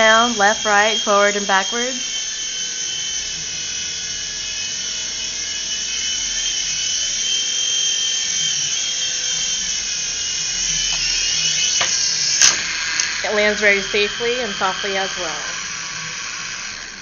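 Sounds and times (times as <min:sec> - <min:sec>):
toy helicopter whining: 0:00.0 - 0:17.0.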